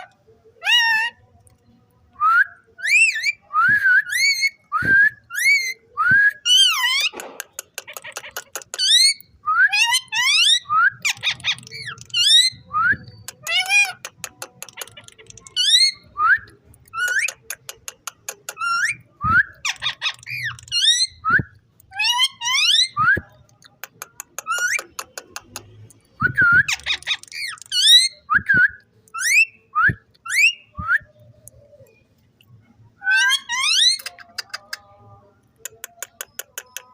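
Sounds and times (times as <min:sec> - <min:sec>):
parrot rapid clicks: 0:07.0 - 0:09.0, 0:13.3 - 0:15.5, 0:35.6 - 0:36.9.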